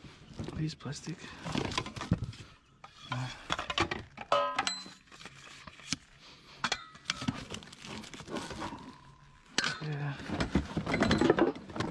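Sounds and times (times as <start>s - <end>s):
hard objects clicking and clinking: 8.6s - 11.9s.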